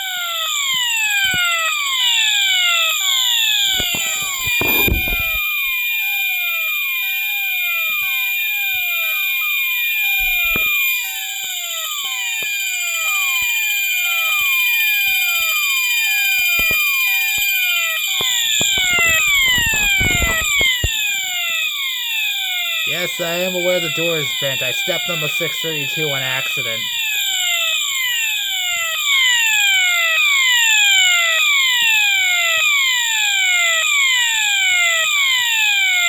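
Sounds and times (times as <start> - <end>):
fire alarm sounders: 0.0 - 36.0.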